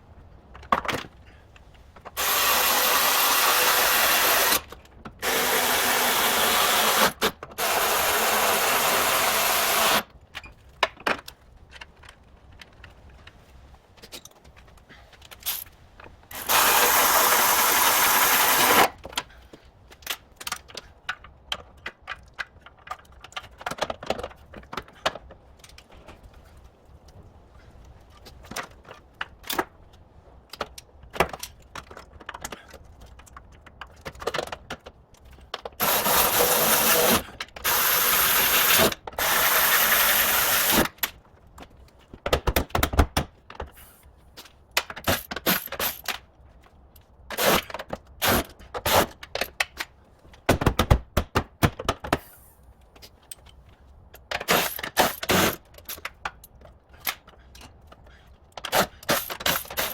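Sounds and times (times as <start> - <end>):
power tool bursts: 2.2 - 10.0, 16.3 - 19.0, 35.8 - 40.9, 54.5 - 55.6, 58.7 - 59.9.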